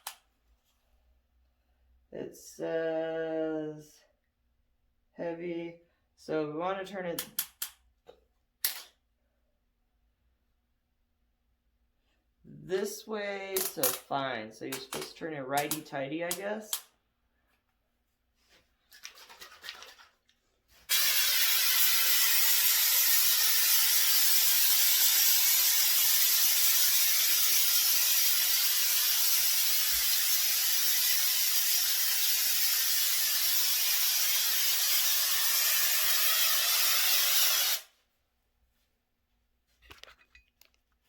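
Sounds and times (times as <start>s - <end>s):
spray can hissing: 20.9s - 37.9s.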